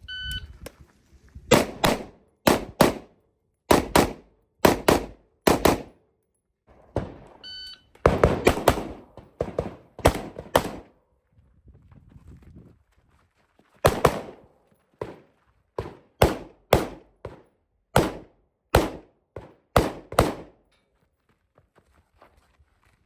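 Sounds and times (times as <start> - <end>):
shot timer beep: 0.0 - 0.5, 7.4 - 7.9
rifle shots: 1.5 - 6.0, 8.0 - 10.9, 13.8 - 15.2, 15.8 - 20.6.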